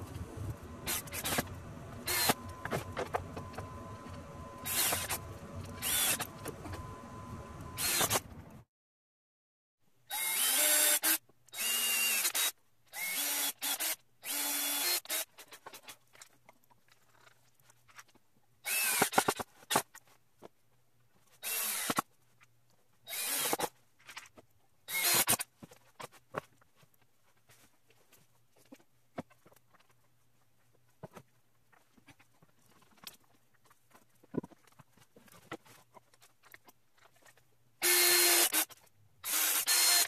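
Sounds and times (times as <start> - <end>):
power drill motor whine: 0.0 - 8.6, 10.1 - 15.2, 18.7 - 19.2, 37.8 - 38.6, 39.2 - 40.0.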